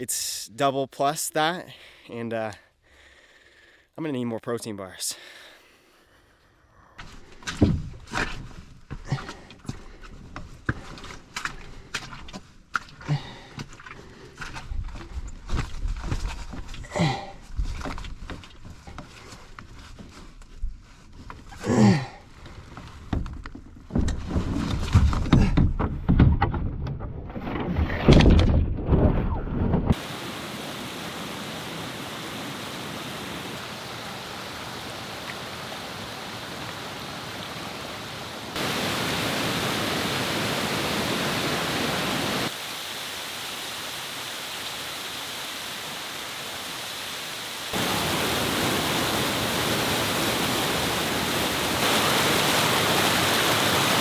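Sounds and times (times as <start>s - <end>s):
thumps and rustling: 22.7s - 30.0s
waterfall rushing water: 30.0s - 54.0s.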